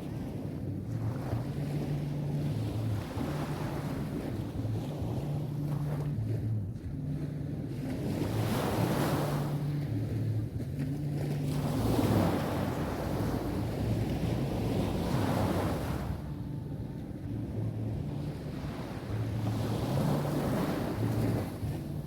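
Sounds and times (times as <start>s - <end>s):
low droning hum: 0.0s - 22.0s
wind buffeting microphone: 0.0s - 22.0s
sea waves breaking on beach: 10.8s - 16.4s, 17.6s - 22.0s.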